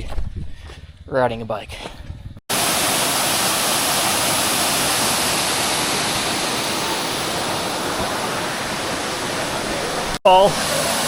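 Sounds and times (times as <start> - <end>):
waterfall rushing: 2.5 - 11.0.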